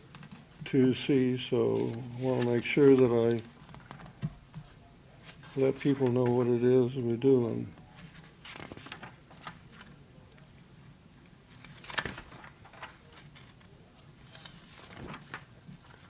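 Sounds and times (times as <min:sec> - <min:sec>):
paper rustling: 0:01.6 - 0:06.6, 0:07.8 - 0:10.5, 0:11.5 - 0:16.0.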